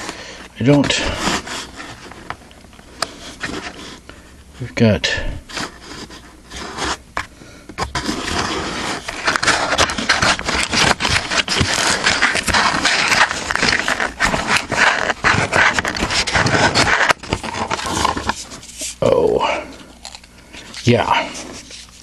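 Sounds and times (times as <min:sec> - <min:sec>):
cardboard scraping and rustling: 0:00.7 - 0:02.4, 0:03.1 - 0:04.0, 0:05.5 - 0:07.0, 0:07.8 - 0:19.0.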